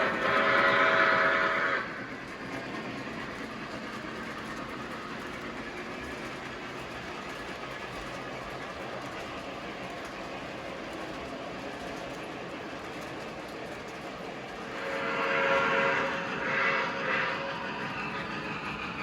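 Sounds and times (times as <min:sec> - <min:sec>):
model train horn: 0:00.0 - 0:01.9, 0:14.6 - 0:17.6
train rolling along track: 0:00.0 - 0:19.0.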